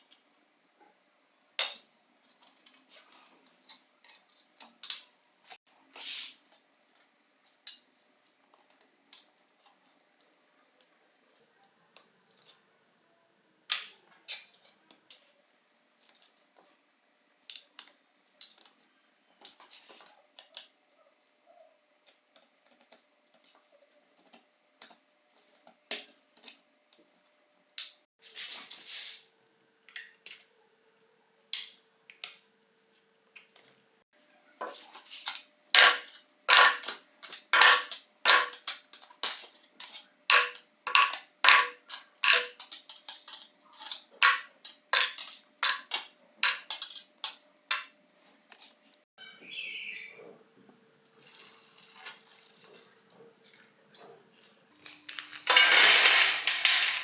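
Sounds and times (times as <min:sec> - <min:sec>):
metal parts and tools clicking: 0:34.6 - 0:47.9, 0:54.8 - 0:57.0
metal scraping: 0:34.6 - 0:47.9.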